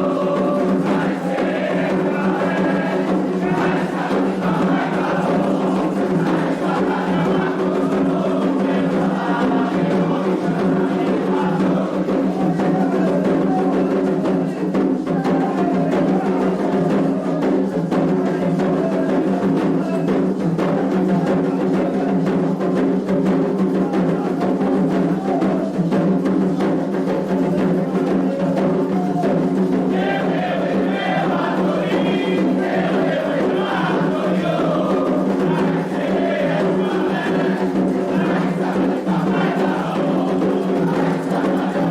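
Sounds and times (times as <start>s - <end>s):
hand drums playing: 0.0s - 41.9s.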